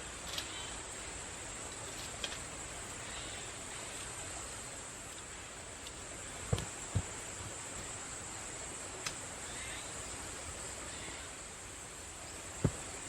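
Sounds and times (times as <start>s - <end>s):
steady high hiss: 0.0s - 13.0s
faint clicks: 0.2s - 0.9s, 1.7s - 4.2s, 5.1s - 8.0s, 9.0s - 9.3s.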